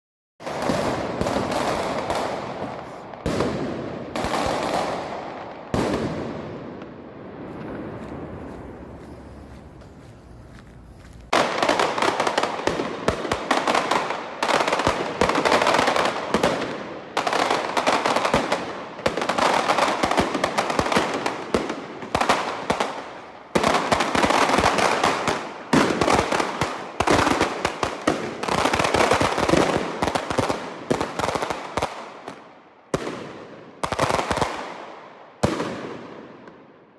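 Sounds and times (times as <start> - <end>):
fireworks bangs: 0.4 - 23.0.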